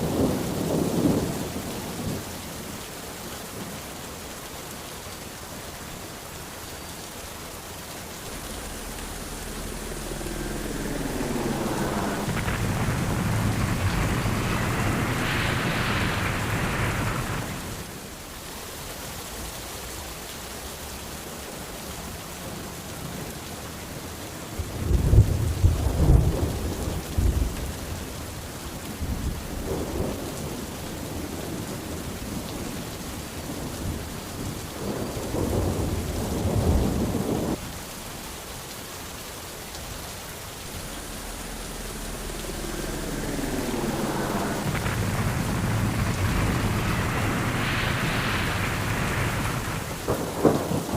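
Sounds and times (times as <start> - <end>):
steady rain: 0.0 - 50.9
thunder rumbling: 6.3 - 18.3, 24.6 - 28.1, 33.5 - 50.9.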